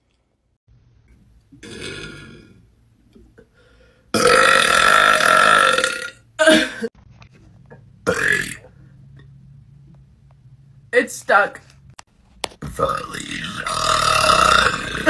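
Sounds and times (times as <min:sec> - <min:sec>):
woman burping loudly: 0:01.6 - 0:02.6, 0:04.1 - 0:06.9, 0:08.0 - 0:08.7, 0:12.8 - 0:15.0.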